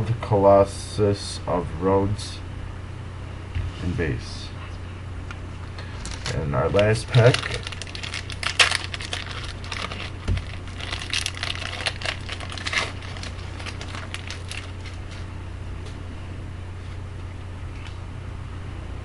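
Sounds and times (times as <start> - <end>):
steady low hum: 0.0 - 19.0
card pack wrapper tearing and crinkling: 6.0 - 15.2.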